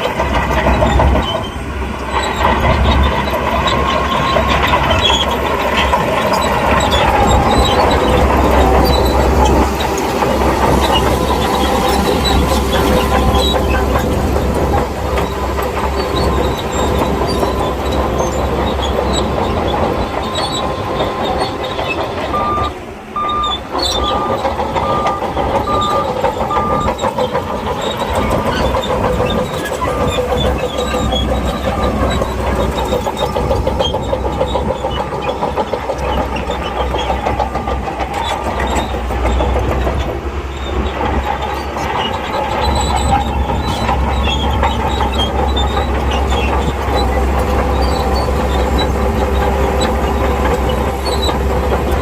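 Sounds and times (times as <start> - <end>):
bulldozer diesel engine running: 0.0 - 52.0
steel tracks clattering: 0.0 - 52.0
beeping alarm: 22.3 - 27.0.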